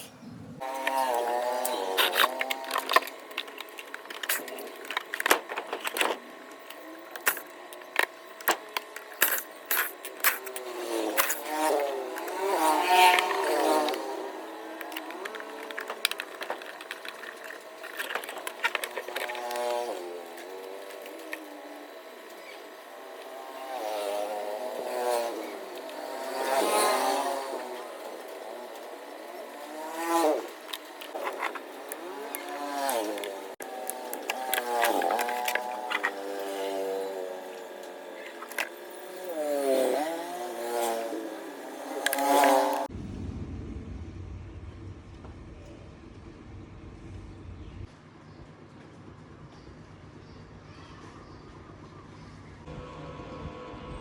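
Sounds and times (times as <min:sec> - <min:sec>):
small electric motor whining: 0:00.0 - 0:42.9, 0:52.7 - 0:54.0
humming tone falling in pitch: 0:52.7 - 0:54.0.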